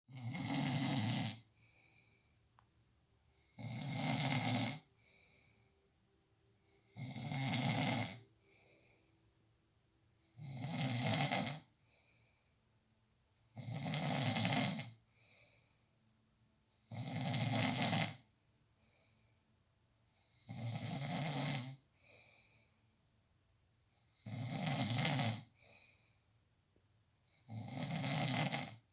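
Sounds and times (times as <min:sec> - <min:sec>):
person snoring loudly: 0:00.1 - 0:01.5, 0:03.5 - 0:04.9, 0:06.9 - 0:08.2, 0:10.4 - 0:11.7, 0:13.6 - 0:15.0, 0:16.9 - 0:18.2, 0:20.4 - 0:21.8, 0:24.2 - 0:25.5, 0:27.4 - 0:28.8.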